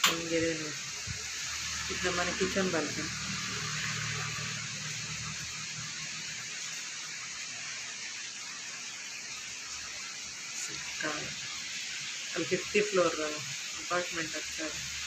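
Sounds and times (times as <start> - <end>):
heavy rain falling: 0.0 - 8.7.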